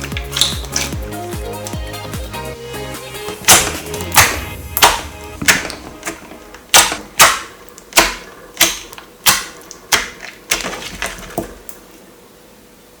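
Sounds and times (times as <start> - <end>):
wet pops of squeezed slime: 0.0 - 2.2, 3.3 - 10.7.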